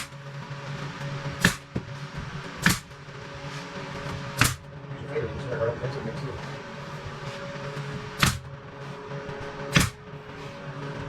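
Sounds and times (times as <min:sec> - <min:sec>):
steady low hum: 0:00.0 - 0:11.0
nail gun shots: 0:01.4 - 0:01.7, 0:02.6 - 0:03.0, 0:04.4 - 0:04.7, 0:08.2 - 0:08.5, 0:09.7 - 0:10.0.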